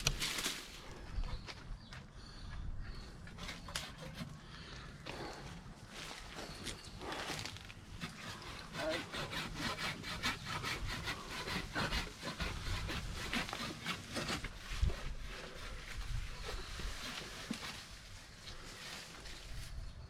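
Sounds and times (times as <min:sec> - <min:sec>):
hand saw cutting branch: 0:03.4 - 0:04.3, 0:07.8 - 0:18.6.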